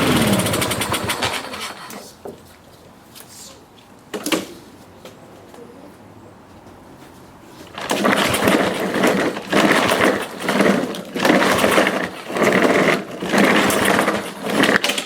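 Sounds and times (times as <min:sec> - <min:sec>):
lawn mower engine surging: 0:00.0 - 0:02.0, 0:07.7 - 0:15.0.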